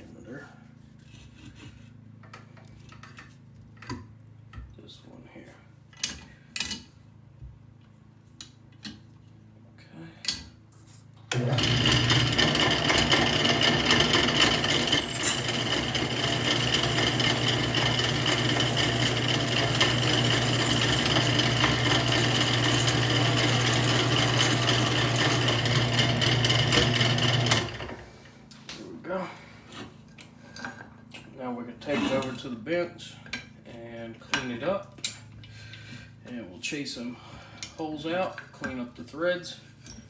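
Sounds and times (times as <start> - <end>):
drill press humming: 11.3 - 28.0.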